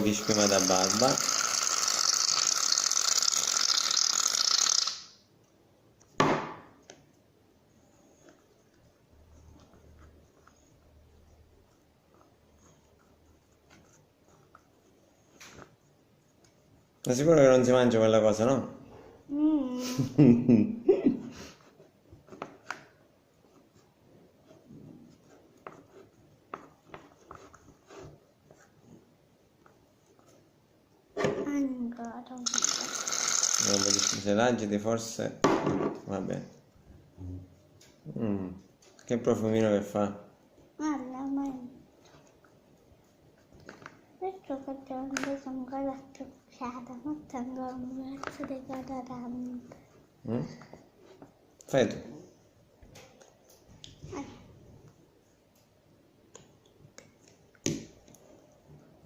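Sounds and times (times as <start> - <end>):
utensil stirring slime in container: 0.0 - 4.6, 7.1 - 17.9, 32.4 - 34.4
aerosol can spraying: 32.4 - 34.2.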